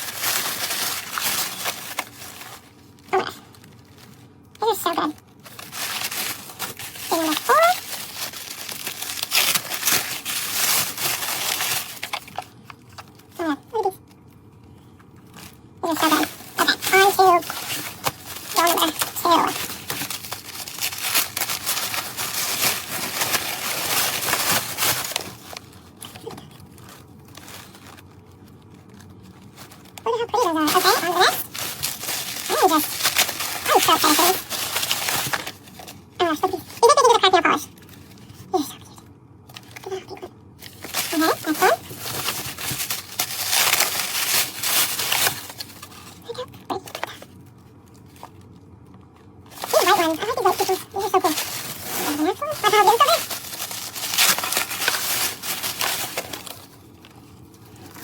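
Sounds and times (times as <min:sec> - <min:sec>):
plastic packaging crinkling: 0:00.0 - 0:38.8, 0:39.4 - 0:58.0.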